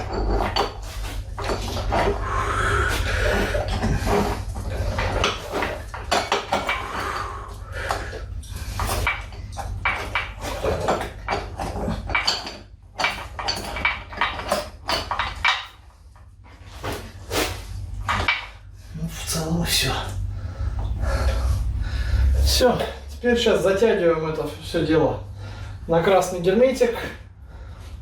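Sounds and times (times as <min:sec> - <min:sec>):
metal parts clinking: 0:00.0 - 0:02.2, 0:07.9 - 0:15.8.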